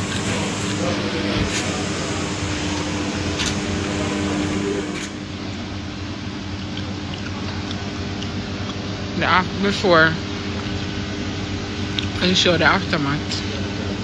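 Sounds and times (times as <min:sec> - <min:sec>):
water wash noise: 0:00.0 - 0:05.7
boat engine humming: 0:00.0 - 0:06.4.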